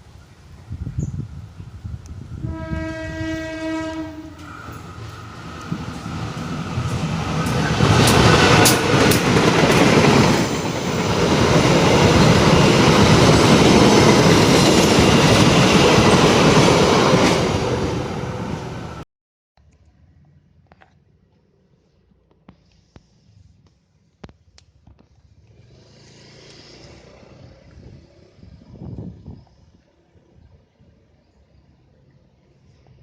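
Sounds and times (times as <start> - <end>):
train passing close by: 0.0 - 19.0
locomotive horn blast: 2.4 - 4.9.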